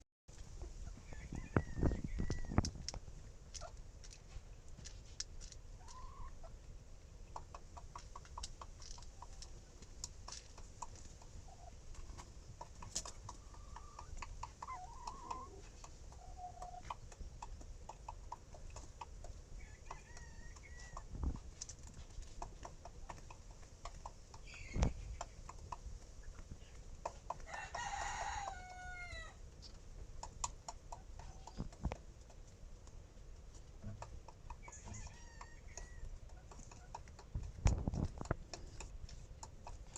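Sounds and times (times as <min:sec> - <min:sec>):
rooster clucking chirps: 0:10.8 - 0:21.4, 0:23.0 - 0:29.4, 0:33.8 - 0:38.9
rooster crowing: 0:27.5 - 0:29.4.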